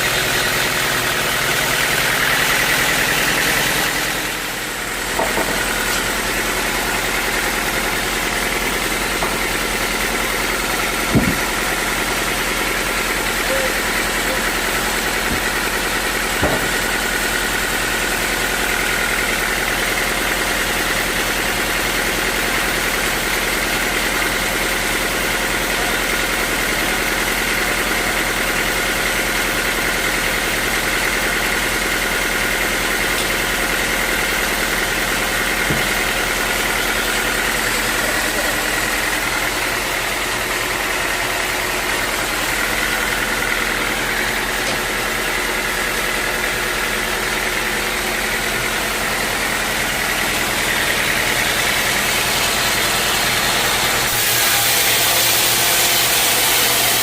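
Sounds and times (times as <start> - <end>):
sawmill machinery drone: 0.0 - 57.0
short knocks: 11.1 - 11.6.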